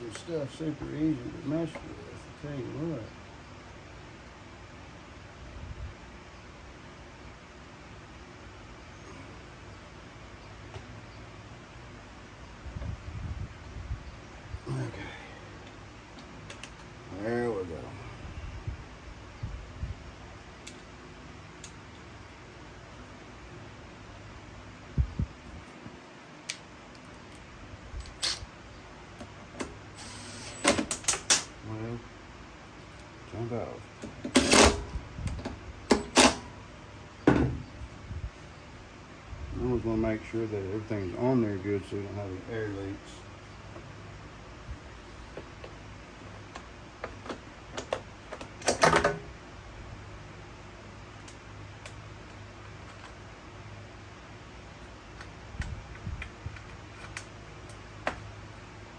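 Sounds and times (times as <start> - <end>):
faint steady hum: 0.0 - 58.9.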